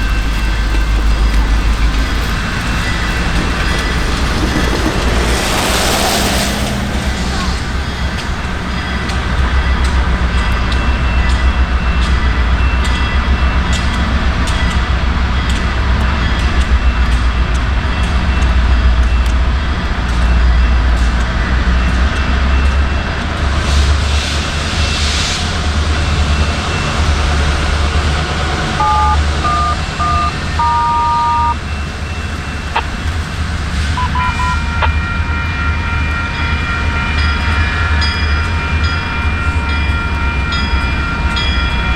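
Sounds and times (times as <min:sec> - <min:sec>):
diesel train rumbling past: 0:00.0 - 0:41.9
faint high tones: 0:28.8 - 0:31.6
train horn blasts: 0:28.8 - 0:33.2, 0:33.8 - 0:41.9.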